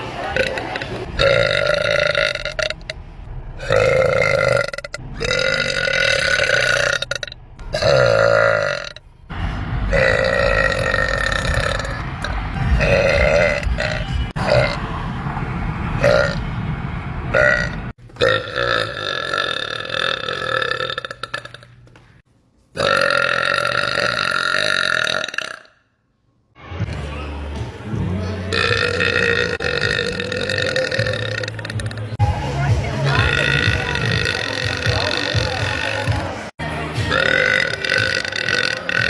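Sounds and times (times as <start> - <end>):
woman burping loudly: 0.3 - 2.9, 3.6 - 9.0, 9.9 - 12.0, 12.8 - 14.8, 17.4 - 21.7, 22.8 - 25.8, 28.5 - 32.1, 33.1 - 36.2, 37.1 - 39.0.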